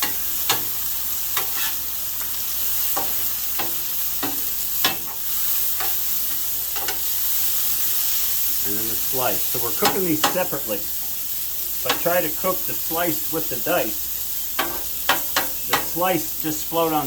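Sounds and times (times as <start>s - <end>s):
onions sizzling in oil: 0.0s - 17.0s
spatula scraping and tapping steel: 1.4s - 5.2s.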